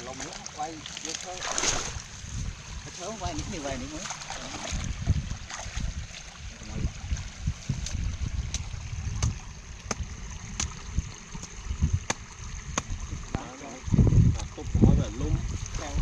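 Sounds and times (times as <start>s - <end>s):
water trickling and sloshing: 0.0s - 16.0s.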